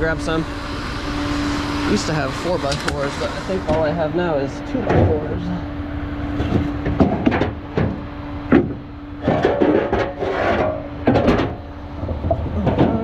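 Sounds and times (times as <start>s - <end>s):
wood scraping on wood: 9.4s - 10.7s.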